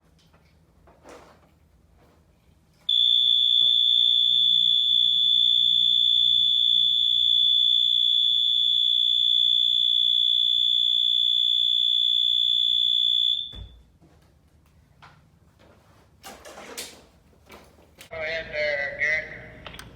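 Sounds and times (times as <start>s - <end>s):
fire alarm high-pitched tone: 2.9s - 13.8s.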